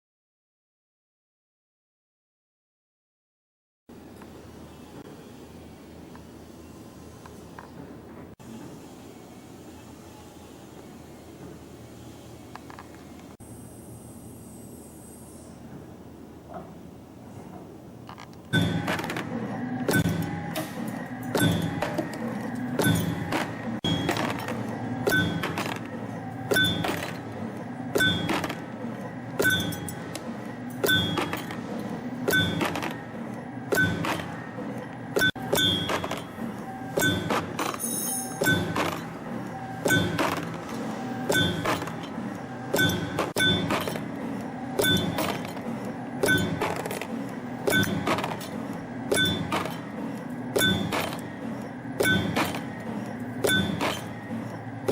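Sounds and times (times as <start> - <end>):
low machine hum: 3.9 - 54.9
metallic clink with ring: 37.8 - 38.6.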